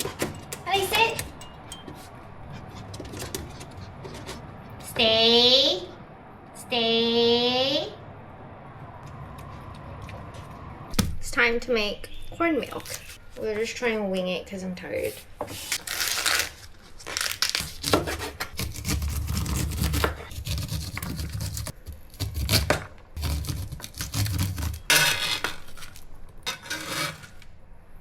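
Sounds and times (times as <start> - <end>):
dishes and utensils clattering: 0.0 - 4.4
packaging tearing and crinkling: 15.6 - 26.1.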